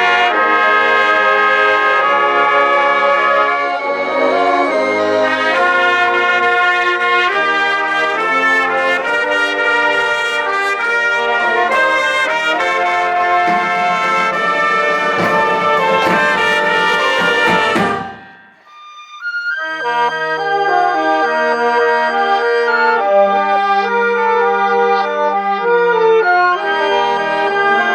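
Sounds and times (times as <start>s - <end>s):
marching band brass ballad: 0.0s - 18.6s
drums: 9.0s - 18.6s.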